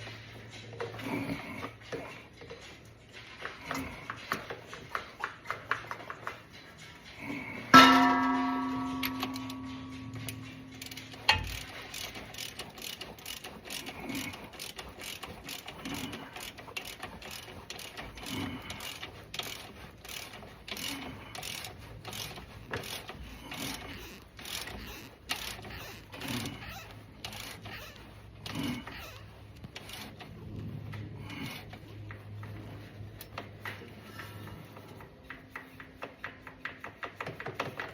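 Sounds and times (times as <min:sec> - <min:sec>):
sharp metallic knock: 0:07.8 - 0:11.5
ratchet wrench clicking: 0:08.7 - 0:30.3.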